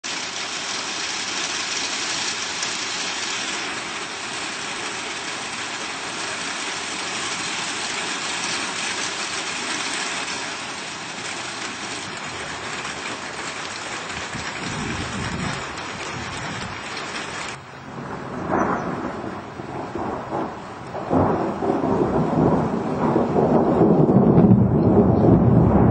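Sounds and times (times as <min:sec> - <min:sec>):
heavy rain: 0:00.0 - 0:25.9
thunder rumble: 0:02.4 - 0:25.9.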